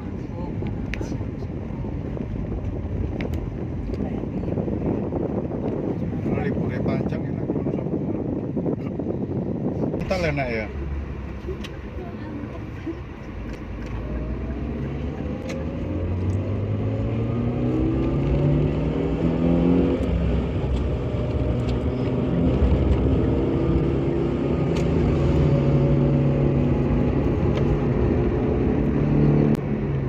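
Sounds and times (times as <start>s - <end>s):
car engine accelerating: 8.2s - 30.0s.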